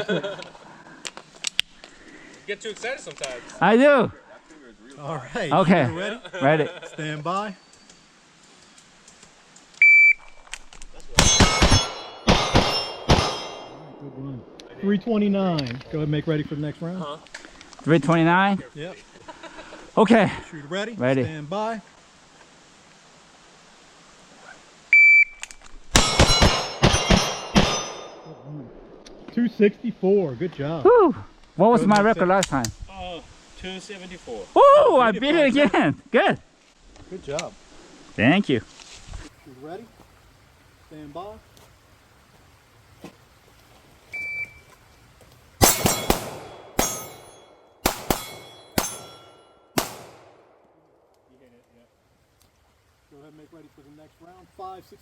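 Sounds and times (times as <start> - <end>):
pistol shots: 11.2 - 13.9, 26.0 - 28.2, 45.6 - 50.6
steel targets ringing: 11.2 - 14.0, 26.0 - 28.4, 45.6 - 50.2
shot timer beep: 25.0 - 25.4.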